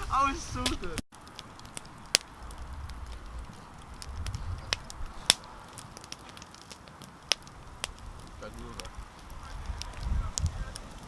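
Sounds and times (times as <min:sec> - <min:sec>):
fire popping: 0:00.0 - 0:11.0
wood bonfire crackling: 0:00.0 - 0:11.0
low rumble: 0:01.9 - 0:05.9, 0:07.5 - 0:11.0.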